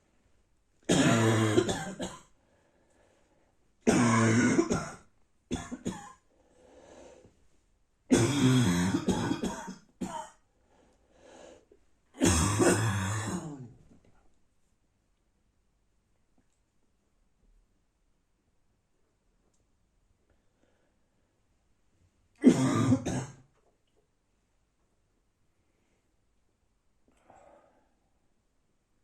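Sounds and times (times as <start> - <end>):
person barking cough: 0.9 - 2.2, 8.1 - 10.3, 22.4 - 23.4.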